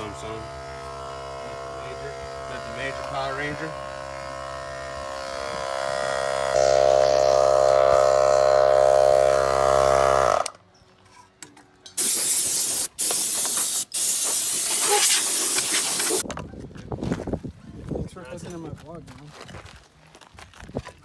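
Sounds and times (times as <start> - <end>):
mechanical hum: 0.0 - 12.1
loud even hiss: 12.0 - 16.2.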